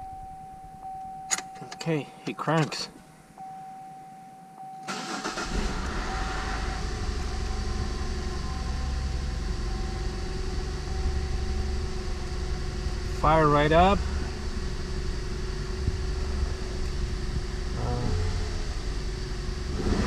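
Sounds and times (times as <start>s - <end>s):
car starter cranking: 4.8s - 7.8s
car engine idling: 4.8s - 20.0s.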